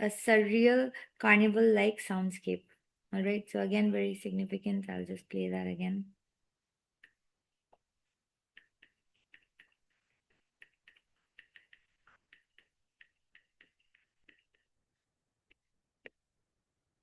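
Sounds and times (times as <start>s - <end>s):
computer keys clicking: 8.5s - 14.7s.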